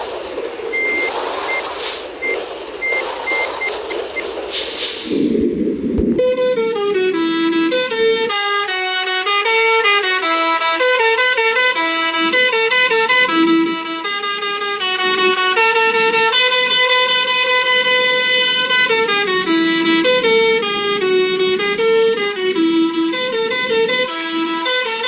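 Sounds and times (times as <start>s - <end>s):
bus horn playing a melody: 6.2s - 25.0s.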